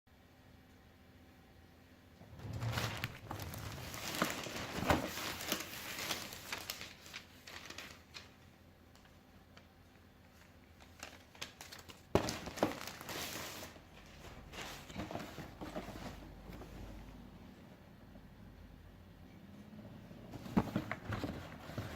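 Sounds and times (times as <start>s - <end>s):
paper packaging crinkling: 2.4s - 9.7s, 10.3s - 16.5s.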